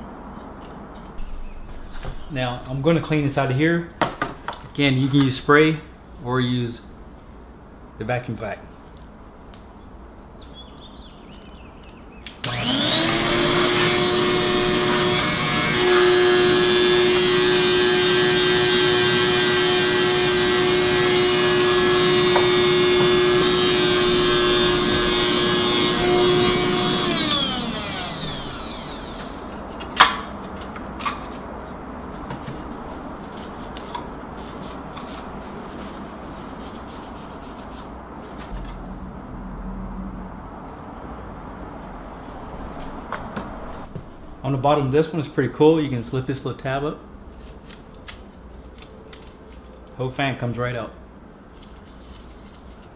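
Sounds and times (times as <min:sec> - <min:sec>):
small vacuum cleaner whining: 0:12.3 - 0:29.6.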